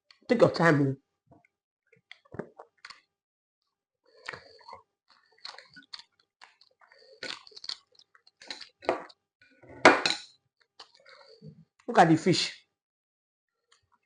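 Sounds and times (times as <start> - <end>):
person chewing close to microphone: 4.1 - 8.9, 10.6 - 11.4.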